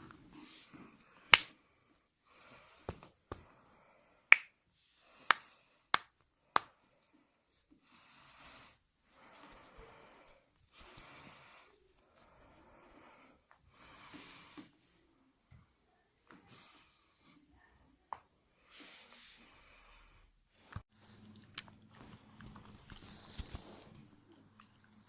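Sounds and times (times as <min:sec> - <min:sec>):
soft hissy sounds: 0:21.1 - 0:25.0.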